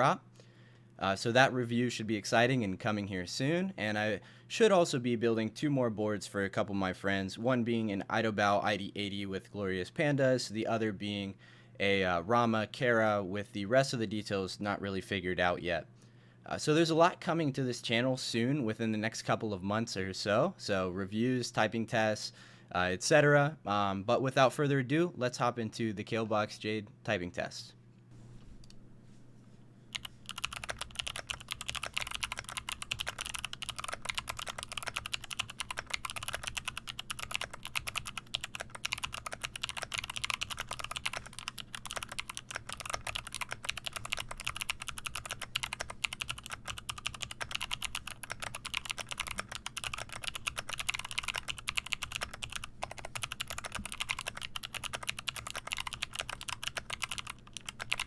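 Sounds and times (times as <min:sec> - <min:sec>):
clicky mechanical keyboard typing: 0:29.9 - 0:58.0.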